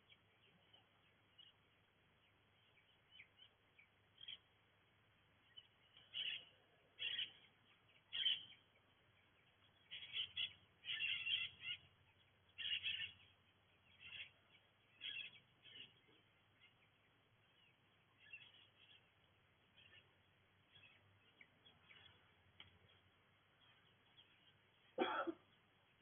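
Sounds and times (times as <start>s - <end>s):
birds chirping: 0.0s - 26.0s.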